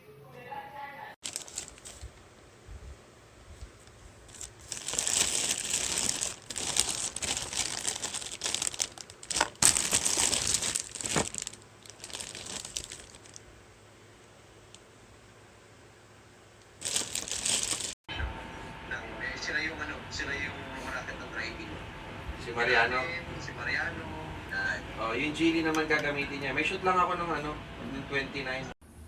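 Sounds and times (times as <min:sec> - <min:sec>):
plastic packaging crinkling: 0:01.2 - 0:02.2, 0:03.8 - 0:13.5, 0:16.7 - 0:18.0.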